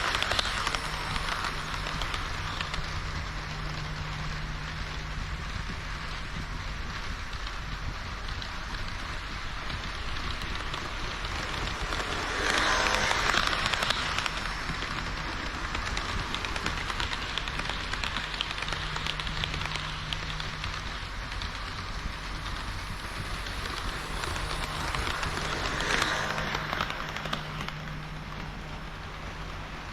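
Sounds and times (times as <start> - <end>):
low steady hum: 0.0 - 29.9
model train wheels clattering: 0.0 - 29.9.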